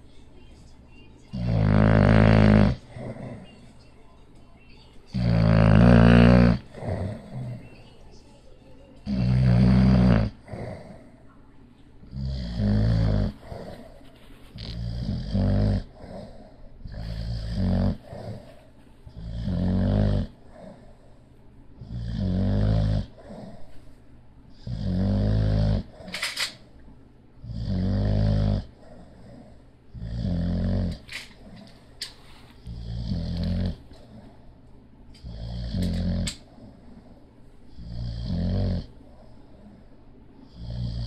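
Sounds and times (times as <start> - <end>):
dog snoring: 1.3 - 3.6, 5.1 - 7.8, 9.0 - 11.1, 12.1 - 21.1, 21.8 - 23.8, 24.5 - 26.6, 27.4 - 31.8, 32.6 - 34.3, 35.2 - 37.1, 37.7 - 39.3, 40.4 - 41.0.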